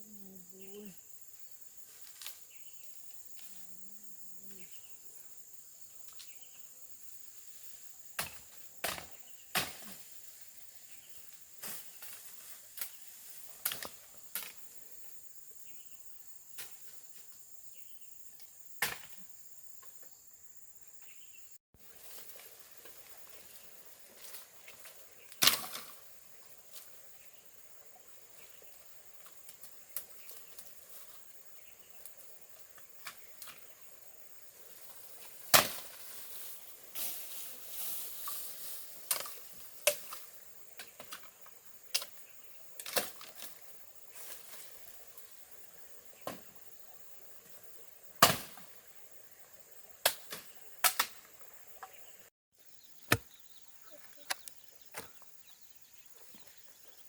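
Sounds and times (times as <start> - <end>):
insect drone: 0.0 - 57.0
chopping strikes on wood: 18.8 - 19.2, 35.5 - 35.9, 48.2 - 48.6, 53.1 - 53.3.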